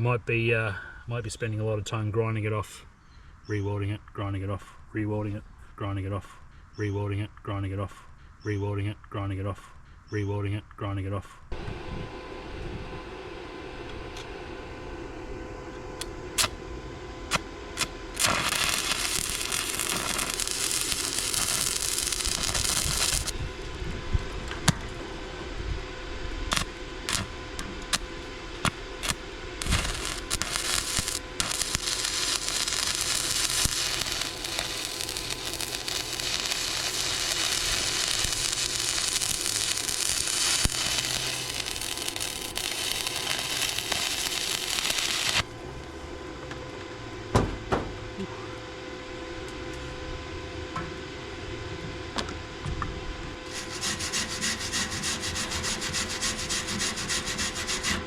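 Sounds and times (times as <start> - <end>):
electric arc welding crackling: 16.0 - 16.6, 17.2 - 45.5, 53.5 - 58.0.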